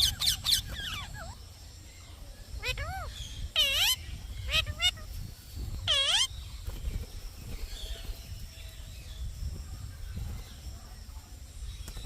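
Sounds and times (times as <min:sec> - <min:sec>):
parrot squawking: 0:00.0 - 0:01.4, 0:02.6 - 0:05.1, 0:05.9 - 0:06.3
faint chirps: 0:00.0 - 0:12.0.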